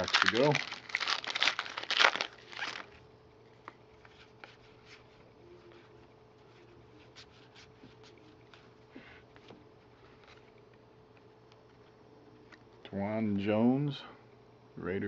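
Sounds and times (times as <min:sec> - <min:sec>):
cards clicking and rustling: 0:00.0 - 0:02.9
plastic wrapper crinkling: 0:00.0 - 0:03.0.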